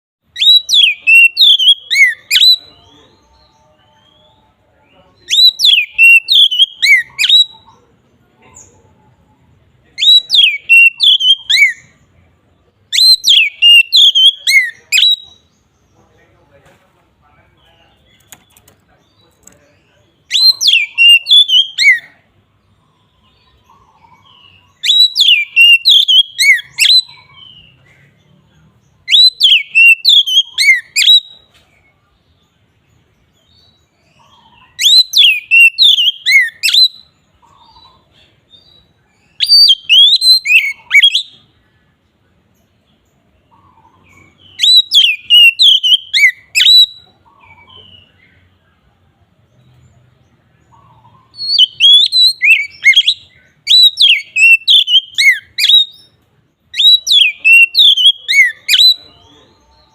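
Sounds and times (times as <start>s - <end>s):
bird singing whistled phrases: 0.3s - 7.7s, 10.0s - 12.0s, 12.9s - 15.5s, 20.2s - 22.2s, 24.0s - 27.8s, 29.0s - 31.5s, 34.2s - 37.9s, 38.5s - 41.5s, 43.7s - 48.2s, 51.2s - 59.9s.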